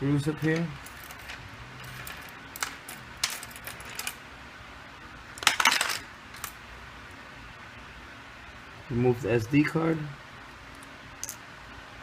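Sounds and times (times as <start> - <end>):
small metal parts rattling: 0.4 - 4.2, 5.4 - 6.6, 11.2 - 11.4.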